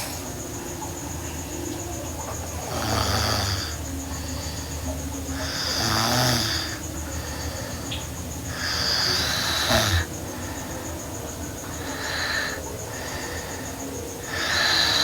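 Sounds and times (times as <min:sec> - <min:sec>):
girl snoring: 0:02.7 - 0:03.8, 0:05.4 - 0:06.8, 0:08.5 - 0:10.2, 0:14.2 - 0:15.0.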